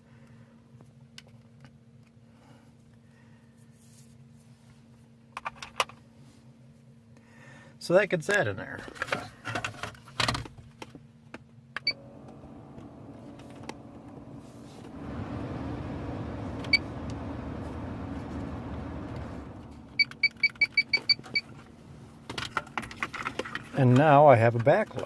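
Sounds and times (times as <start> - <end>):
blower rushing noise: 11.9 - 23.8.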